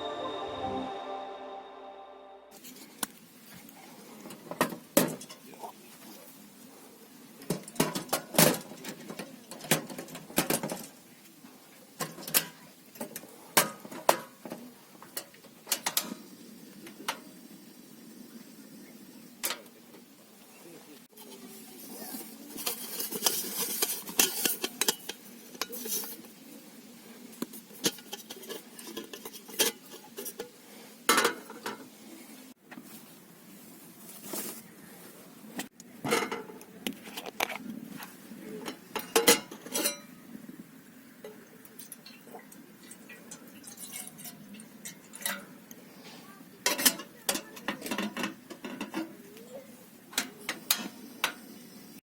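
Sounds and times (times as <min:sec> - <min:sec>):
cookware and cutlery clinking: 0:22.6 - 0:26.2, 0:38.6 - 0:40.1, 0:46.6 - 0:49.2.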